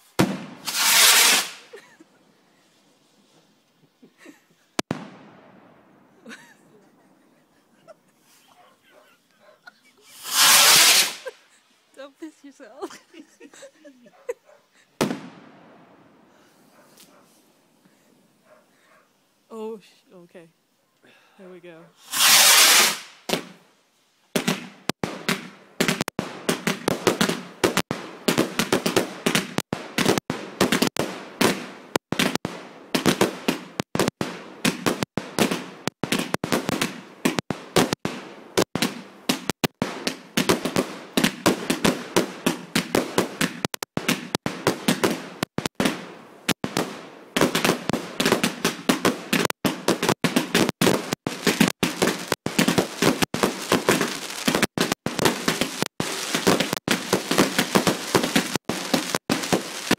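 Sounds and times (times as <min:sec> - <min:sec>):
fireworks bangs and crackles: 0:00.0 - 0:02.0, 0:04.1 - 0:06.6, 0:10.0 - 0:13.7, 0:15.0 - 0:16.5, 0:22.0 - 0:23.6, 0:24.3 - 0:59.9.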